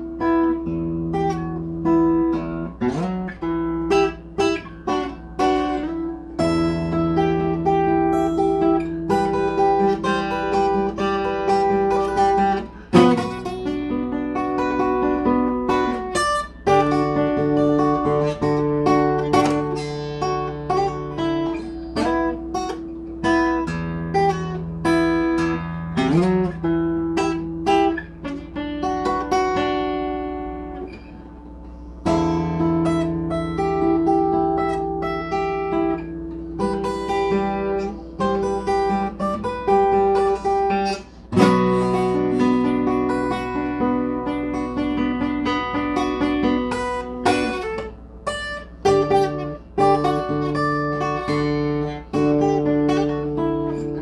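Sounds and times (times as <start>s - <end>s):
acoustic guitar playing: 0.0s - 54.0s.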